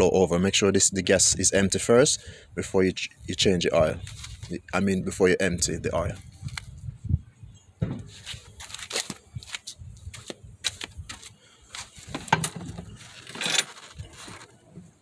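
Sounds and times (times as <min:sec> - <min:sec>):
lawnmower parts clicking and knocking: 0:12.0 - 0:14.9.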